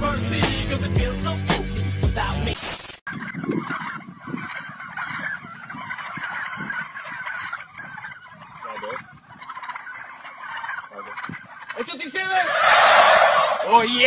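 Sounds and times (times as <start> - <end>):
birds chattering: 3.1 - 14.0.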